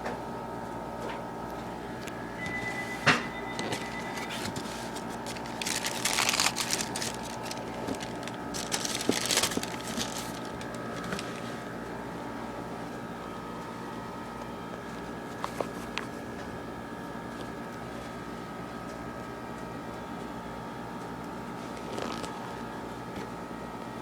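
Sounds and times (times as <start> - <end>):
steady low hum: 0.0 - 20.3
packaging crinkling: 3.6 - 11.4.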